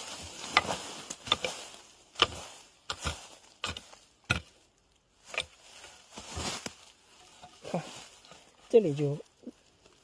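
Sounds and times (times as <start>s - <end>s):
hoe chopping into soil: 0.5s - 4.6s.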